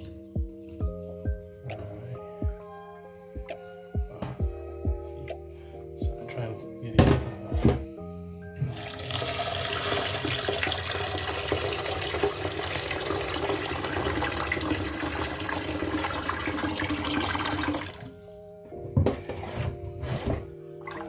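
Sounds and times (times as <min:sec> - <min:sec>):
tap running water into pot: 0:08.6 - 0:18.1.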